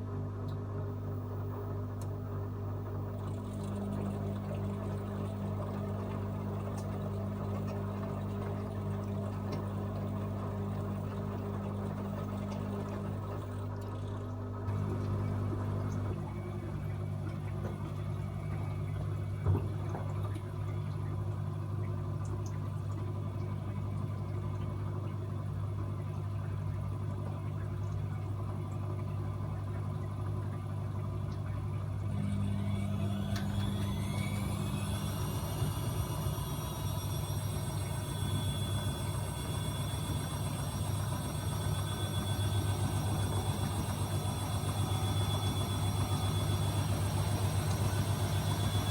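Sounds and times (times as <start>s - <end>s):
washing machine drum spinning: 0.0s - 48.9s
motor whine: 0.9s - 21.0s, 31.5s - 48.9s.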